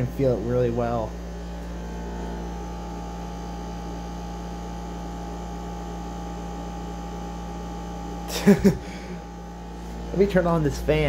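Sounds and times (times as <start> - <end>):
dehumidifier humming loudly: 0.0 - 11.0.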